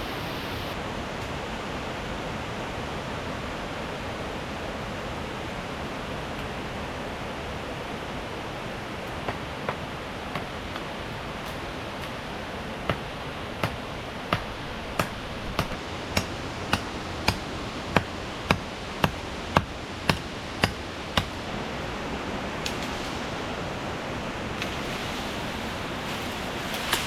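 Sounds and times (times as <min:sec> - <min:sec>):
waterfall rushing: 0:00.0 - 0:01.0, 0:06.8 - 0:27.0
hand tool chopping strikes: 0:09.3 - 0:12.2, 0:12.9 - 0:21.4.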